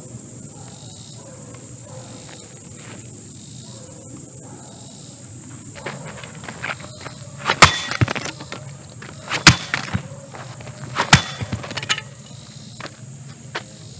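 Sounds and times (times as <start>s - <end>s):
breaking parts rattling: 5.8s - 13.0s.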